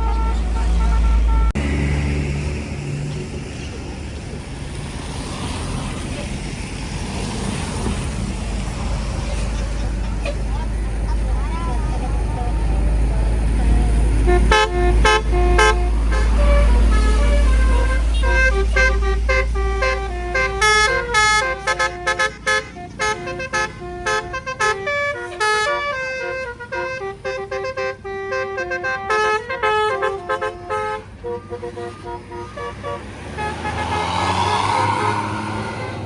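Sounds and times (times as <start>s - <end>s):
musical bus horn playing a tune: 0.0s - 1.6s, 13.6s - 36.0s
bus engine rumbling: 0.0s - 36.0s.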